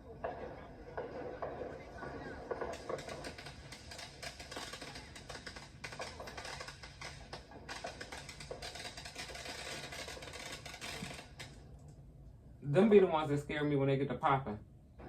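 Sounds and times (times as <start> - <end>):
fireworks crackling: 0.0 - 11.6.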